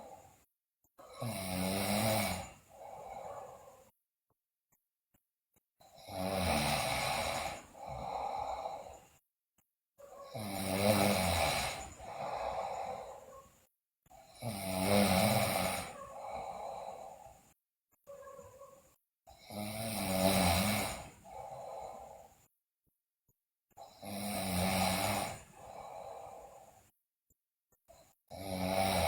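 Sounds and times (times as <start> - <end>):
girl snoring loudly: 1.0 - 3.9, 5.8 - 9.0, 10.0 - 13.4, 14.1 - 17.4, 19.3 - 22.4, 23.8 - 26.8, 28.3 - 29.0.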